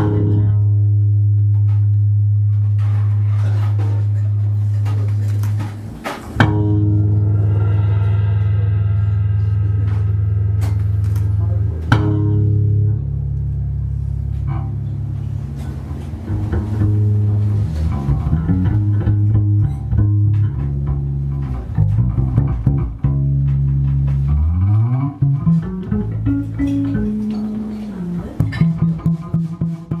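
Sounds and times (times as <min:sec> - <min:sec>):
guitar: 0:00.0 - 0:30.0
plucked bass line: 0:00.0 - 0:30.0.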